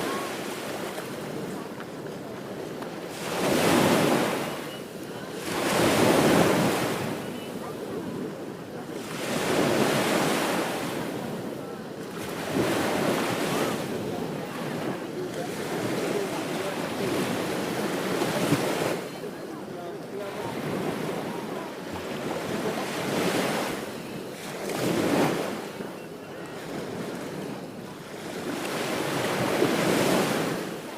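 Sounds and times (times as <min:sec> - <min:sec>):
wind on microphone: 0:00.0 - 0:19.3
ocean waves breaking: 0:00.0 - 0:30.9.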